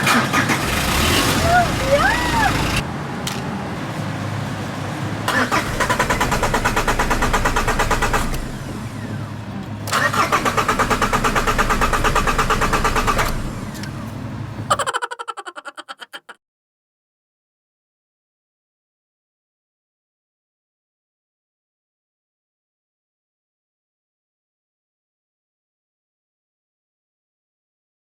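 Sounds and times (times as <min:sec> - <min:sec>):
starter cranking engine: 0:00.0 - 0:02.8, 0:05.3 - 0:09.2, 0:09.8 - 0:14.0.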